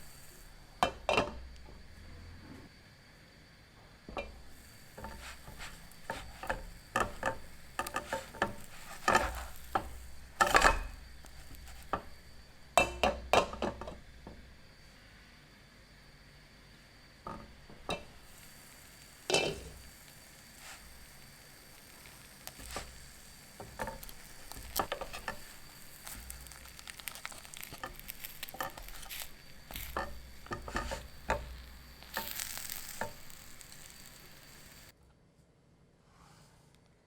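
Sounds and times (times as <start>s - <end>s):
toast sizzling in a pan: 0.0s - 2.0s, 4.0s - 14.8s, 17.2s - 34.9s
utensil scraping a pan: 4.2s - 12.2s, 17.3s - 34.9s.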